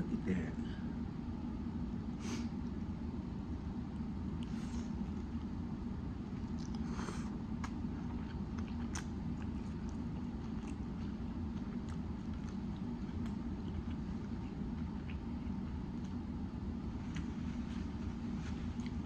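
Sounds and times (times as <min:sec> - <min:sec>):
steady low hum: 0:00.0 - 0:19.0
person chewing sandwich: 0:04.2 - 0:19.0
wet mouth clicks: 0:06.5 - 0:06.8.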